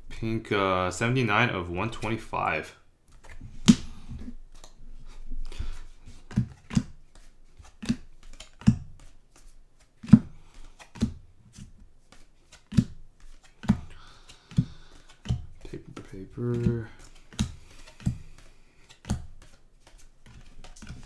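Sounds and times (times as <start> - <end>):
rustle of cards: 3.1 - 21.0
cards tapped down: 5.4 - 21.0.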